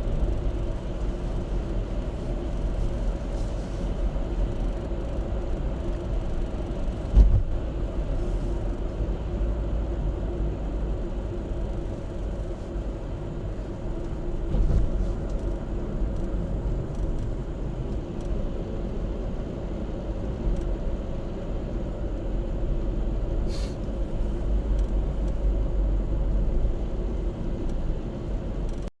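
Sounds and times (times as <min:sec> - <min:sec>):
car road and engine rumble: 0:00.0 - 0:28.9
brief hiss: 0:23.5 - 0:23.9.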